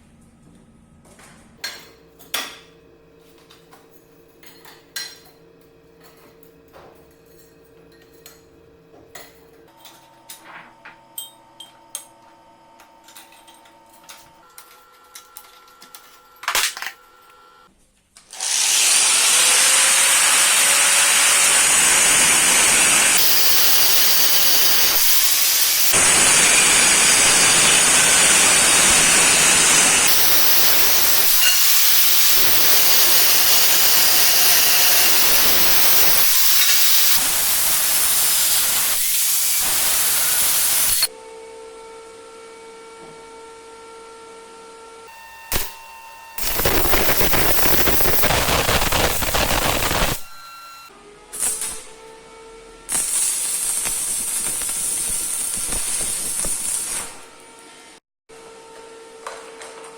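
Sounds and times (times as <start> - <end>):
loud steady hissing: 23.1 - 41.0, 46.4 - 50.3.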